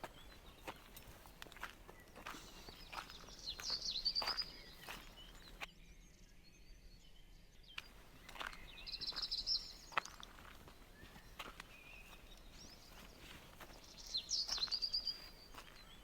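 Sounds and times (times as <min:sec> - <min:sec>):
birds trilled chirps: 0:00.0 - 0:16.0.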